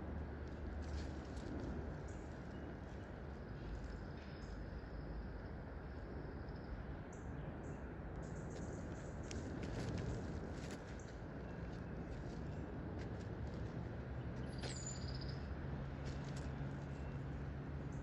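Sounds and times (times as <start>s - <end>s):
low rumble and hiss: 0.0s - 18.0s
faint bird chirps: 14.4s - 15.5s.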